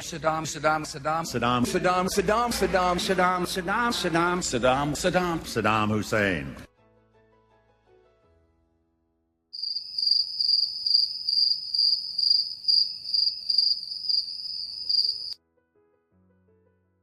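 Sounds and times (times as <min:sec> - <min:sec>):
cricket chirping: 0:09.6 - 0:15.4.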